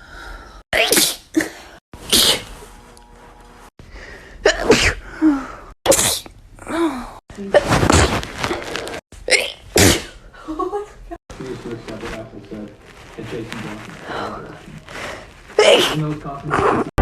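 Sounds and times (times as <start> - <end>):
person sneezing: 0.8 - 2.5, 4.4 - 5.0, 5.9 - 6.3, 9.3 - 10.2.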